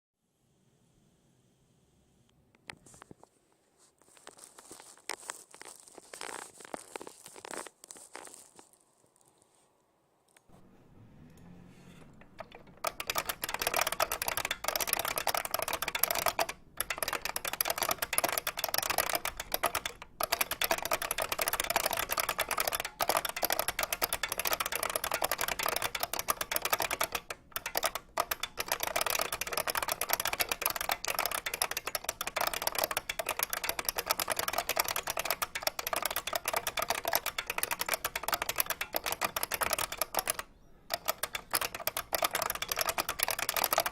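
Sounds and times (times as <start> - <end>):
fast typing key clicks: 12.1 - 43.9.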